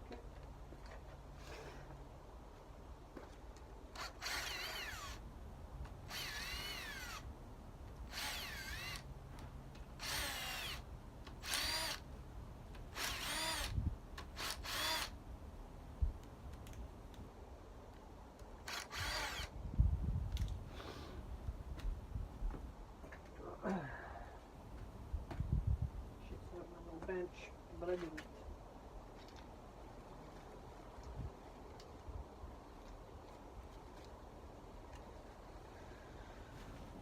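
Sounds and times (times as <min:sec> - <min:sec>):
cordless drill spinning: 0:03.9 - 0:05.3, 0:05.9 - 0:07.3, 0:08.0 - 0:12.1, 0:12.8 - 0:15.2, 0:18.6 - 0:19.6.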